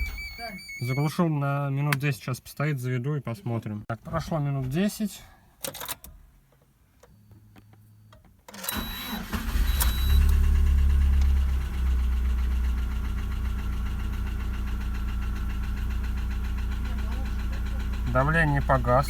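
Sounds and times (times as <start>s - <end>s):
car engine cranking: 8.5s - 19.0s
car engine idling: 9.2s - 19.0s
engine knocking: 10.8s - 19.0s.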